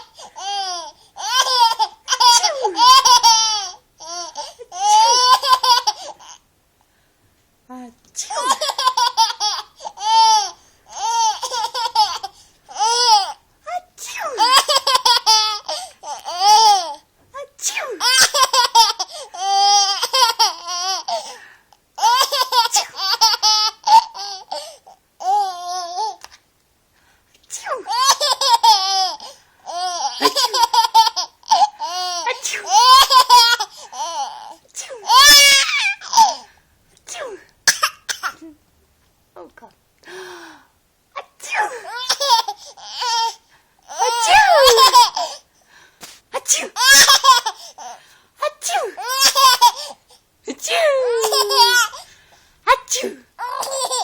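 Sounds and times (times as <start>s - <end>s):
baby laughing: 0.0s - 6.4s, 8.3s - 13.4s, 14.4s - 17.0s, 18.0s - 21.2s, 22.0s - 26.2s, 27.8s - 36.4s, 41.6s - 45.4s, 46.6s - 48.0s, 48.9s - 52.0s, 52.8s - 54.0s.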